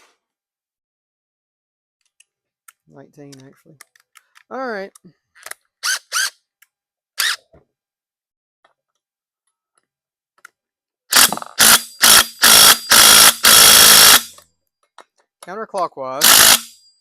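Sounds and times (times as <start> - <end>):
cordless power tool whirring: 7.2 - 7.4, 11.1 - 14.4, 16.2 - 16.7.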